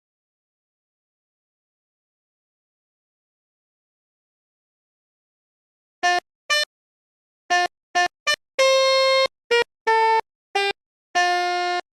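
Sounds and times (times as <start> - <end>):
buzzy wind instrument notes: 6.0 - 6.7, 7.5 - 11.9.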